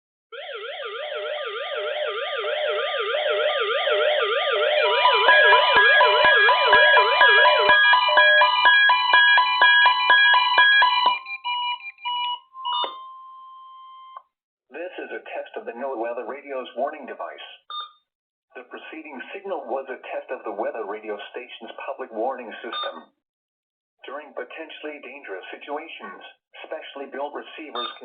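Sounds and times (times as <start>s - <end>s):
warbling alarm tones: 0.3s - 14.2s
alarm beeping: 0.4s - 14.2s, 27.8s - 28.0s.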